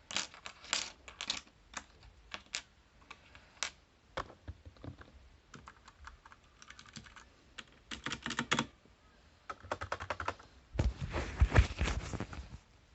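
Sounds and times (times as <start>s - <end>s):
typing on computer keyboard: 5.5s - 8.7s, 9.5s - 10.4s.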